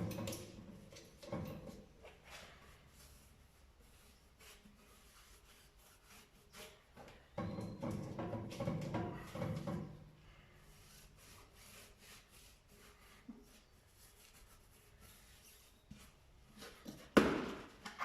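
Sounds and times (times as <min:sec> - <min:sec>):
rubbing paste onto tyre: 0:02.1 - 0:07.4, 0:10.7 - 0:16.8.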